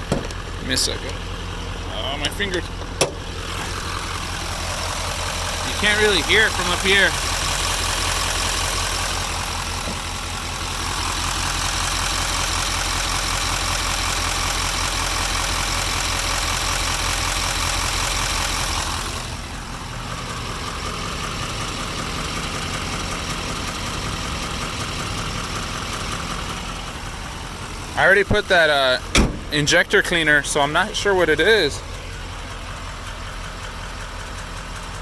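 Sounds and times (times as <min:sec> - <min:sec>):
diesel engine idling: 0:00.0 - 0:35.0
engine clicking and knocking: 0:00.0 - 0:35.0.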